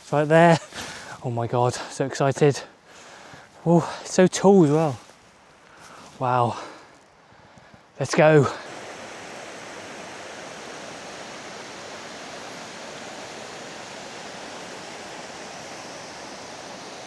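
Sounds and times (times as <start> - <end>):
waterfall rushing: 8.0 - 17.0.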